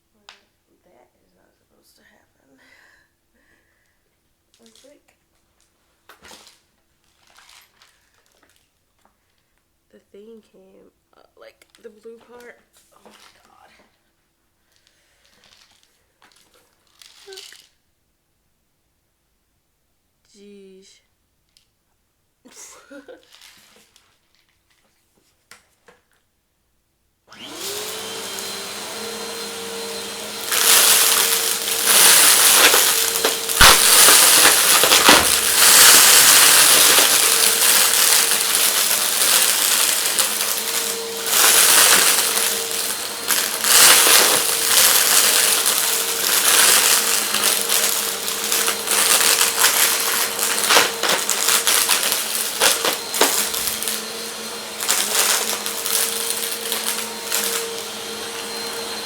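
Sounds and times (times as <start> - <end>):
vacuum cleaner motor humming: 27.3 - 59.0
debris rattling through vacuum: 27.7 - 59.0.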